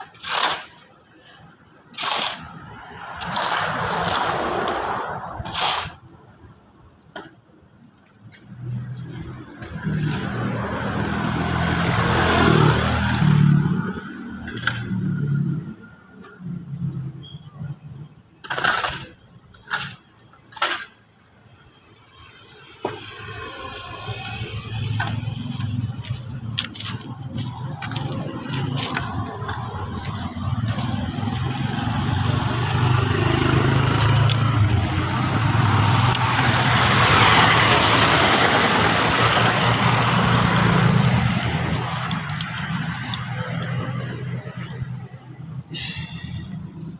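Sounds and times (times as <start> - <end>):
vehicle engine running: 23.5 - 46.5.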